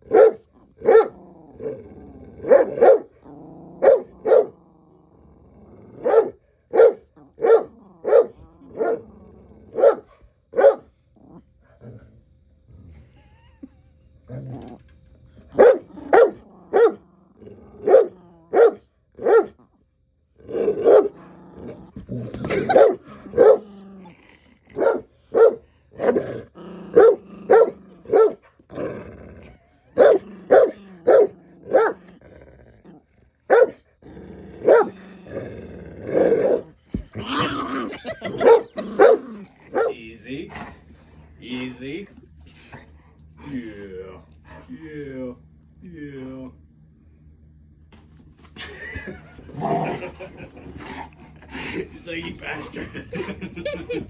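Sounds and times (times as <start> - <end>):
dogs barking: 0.0 - 1.2, 2.4 - 3.2, 3.8 - 4.6, 6.0 - 9.0, 9.7 - 10.9, 15.5 - 17.0, 17.8 - 19.6, 20.6 - 21.2, 22.4 - 23.8, 24.7 - 26.3, 26.9 - 28.4, 30.0 - 32.2, 33.5 - 33.8, 34.6 - 35.0, 36.2 - 40.0
dogs growling: 0.0 - 45.0, 48.0 - 54.0.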